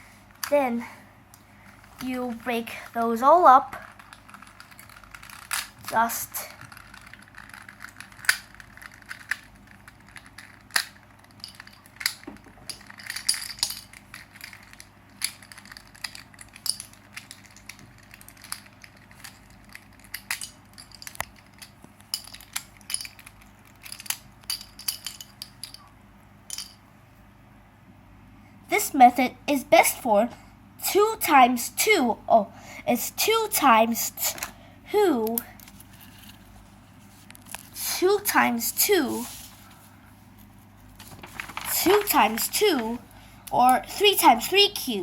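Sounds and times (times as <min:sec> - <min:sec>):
plastic cube pieces clicking: 0:03.9 - 0:05.8, 0:06.6 - 0:25.8.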